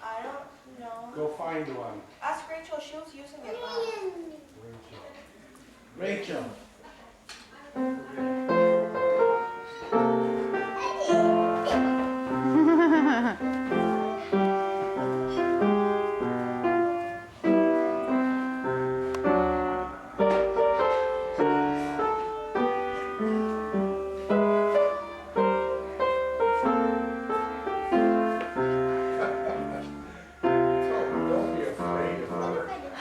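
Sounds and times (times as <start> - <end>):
piano music: 7.8 - 32.9.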